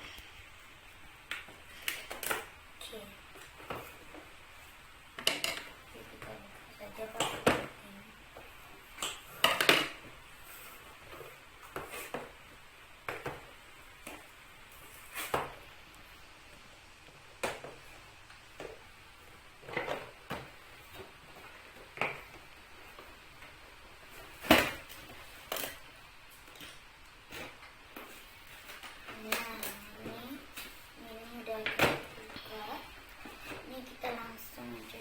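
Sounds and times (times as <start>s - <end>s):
plastic packaging clicks and scrapes: 19.6s - 30.9s.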